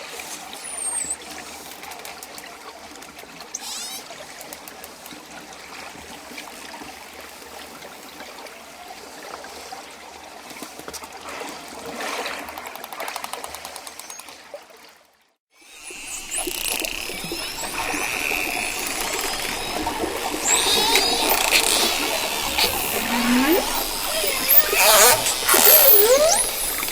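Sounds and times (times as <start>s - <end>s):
dolphin whistles: 0.1s - 1.2s, 16.0s - 26.9s
dolphin clicks: 16.0s - 26.9s
water washing: 16.0s - 26.9s.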